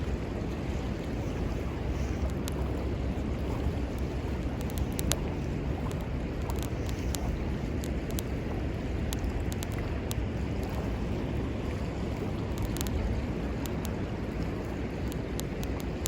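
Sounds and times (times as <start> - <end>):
flowing river water: 0.0 - 16.0
wind on microphone: 0.0 - 16.0.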